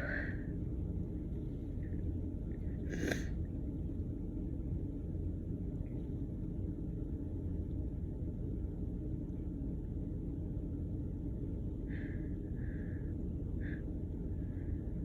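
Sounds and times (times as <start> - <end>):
person breathing: 0.0 - 0.5, 11.9 - 14.8
low background rumble: 0.0 - 15.0.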